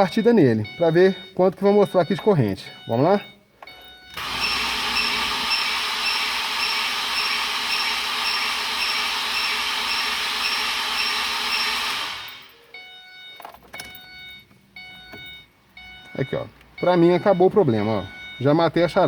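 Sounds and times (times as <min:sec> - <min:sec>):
starter motor cranking engine: 0:04.2 - 0:12.5.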